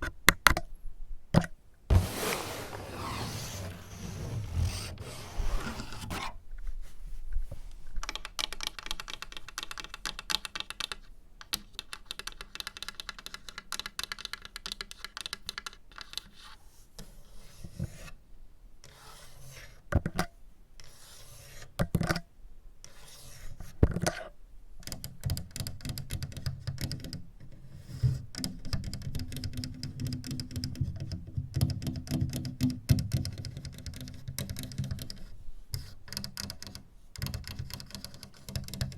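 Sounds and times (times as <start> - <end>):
rasping scratches: 1.9 - 6.4.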